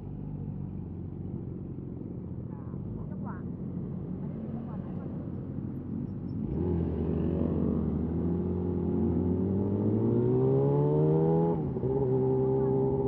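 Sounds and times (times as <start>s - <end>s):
motorcycle engine revving: 6.4s - 13.0s.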